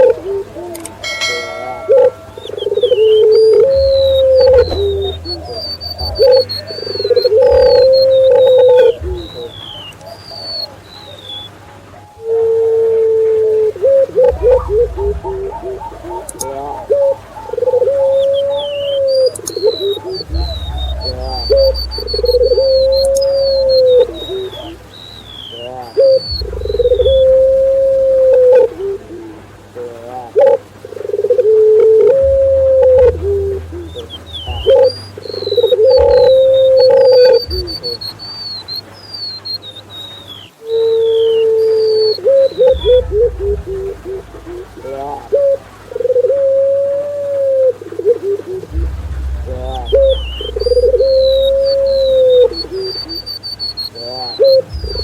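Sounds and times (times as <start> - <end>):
doves cooing: 0.0 - 55.0
small bird high chirps: 0.8 - 11.6, 14.3 - 27.8, 32.2 - 44.0, 49.8 - 55.0
low rumble: 1.0 - 10.1, 13.7 - 29.8, 31.9 - 38.4, 42.2 - 46.1, 48.5 - 55.0.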